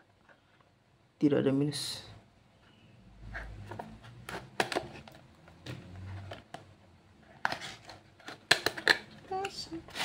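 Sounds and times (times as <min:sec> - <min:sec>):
package clicks and scrapes: 0:07.4 - 0:10.0.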